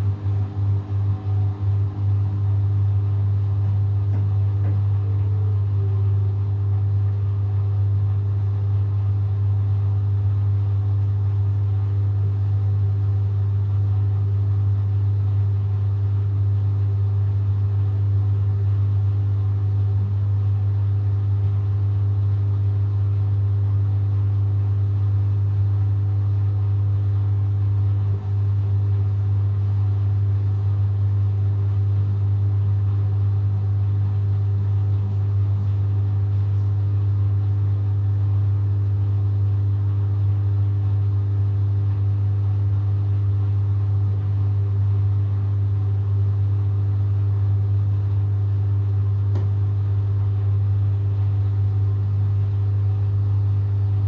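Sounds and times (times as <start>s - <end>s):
washing machine spinning: 0.0s - 18.5s, 23.2s - 54.0s.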